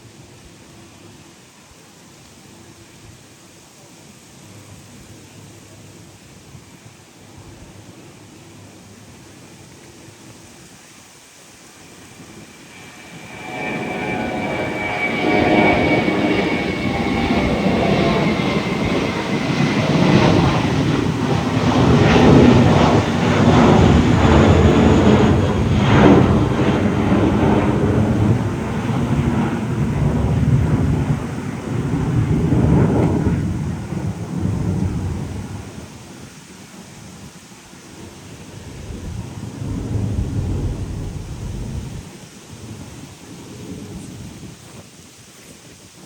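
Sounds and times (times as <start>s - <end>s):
high jet engine whine: 11.2s - 36.2s
jet airliner passing roar: 11.6s - 36.2s, 38.6s - 42.0s.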